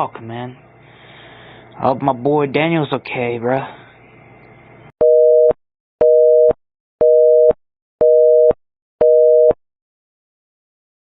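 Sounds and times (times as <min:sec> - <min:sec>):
telephone busy signal: 0:05.0 - 0:09.6.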